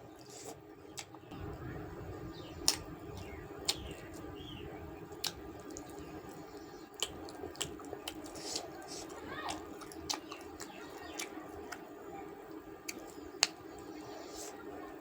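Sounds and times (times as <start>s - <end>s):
low background hum: 0.0s - 15.0s
person chewing with mouth smacks: 0.2s - 1.2s, 2.6s - 4.3s, 5.1s - 11.9s, 12.8s - 14.6s.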